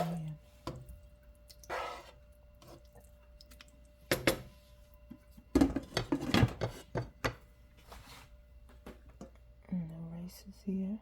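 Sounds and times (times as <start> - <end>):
pots and utensils clattering: 5.6 - 7.4.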